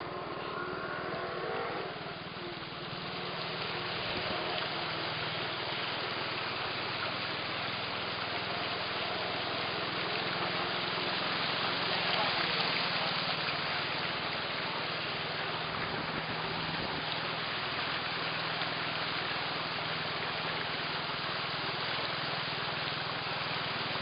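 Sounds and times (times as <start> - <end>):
continuous noise: 0.0 - 24.0
engine running: 0.0 - 24.0.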